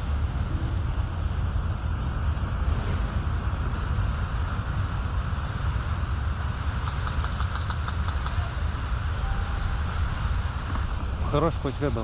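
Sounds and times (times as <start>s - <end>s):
wind rumble: 0.0s - 11.2s.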